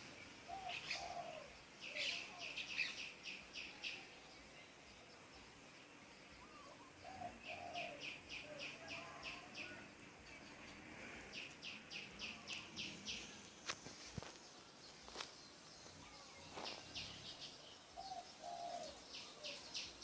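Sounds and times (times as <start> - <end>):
lower gliding bird calls: 0.5 - 3.1.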